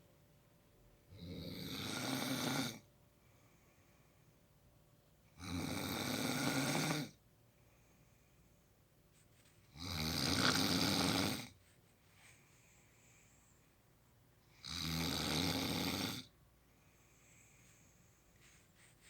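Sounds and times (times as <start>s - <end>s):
man snoring: 1.2s - 2.8s, 5.4s - 7.1s, 9.8s - 11.5s, 14.6s - 16.3s
faint breathing: 3.1s - 4.5s, 7.5s - 8.8s, 11.6s - 14.0s, 16.6s - 19.0s.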